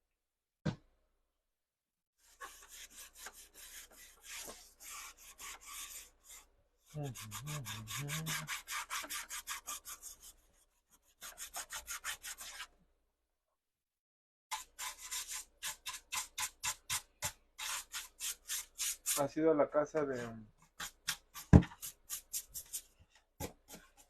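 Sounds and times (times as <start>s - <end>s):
rapid rubbing strokes: 2.4s - 10.4s.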